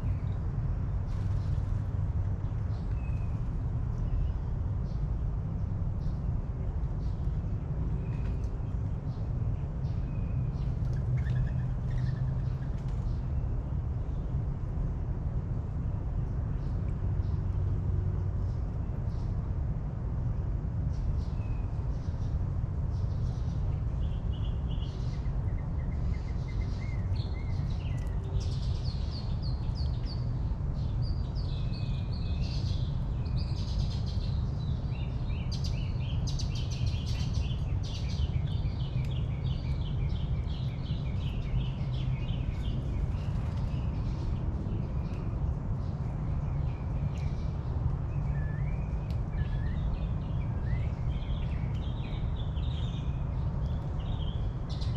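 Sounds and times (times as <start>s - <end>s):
steady low rumble: 0.0s - 54.9s
birds singing and chirping: 8.0s - 13.5s, 23.0s - 54.9s.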